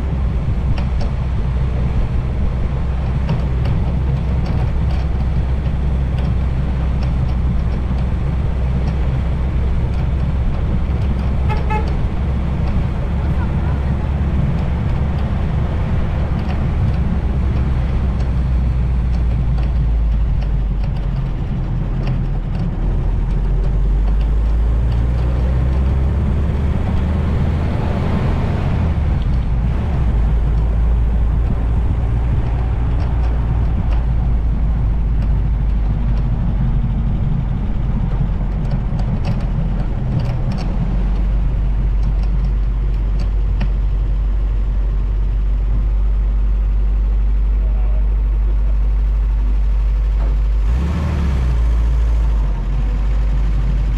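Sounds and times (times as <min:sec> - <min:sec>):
wind buffeting microphone: 0:00.0 - 0:47.2
jeep engine: 0:00.0 - 0:53.9.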